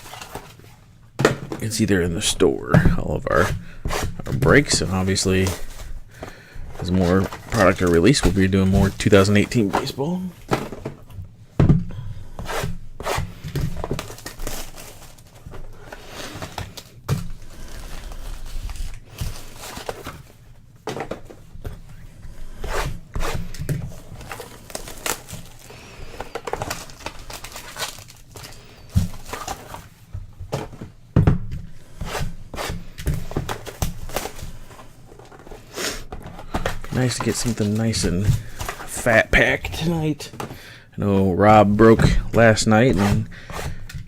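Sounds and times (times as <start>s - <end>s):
cardboard crinkling and tearing: 0.0s - 0.7s, 6.8s - 10.8s, 13.7s - 20.3s, 22.7s - 30.0s, 32.2s - 35.8s, 36.4s - 40.3s.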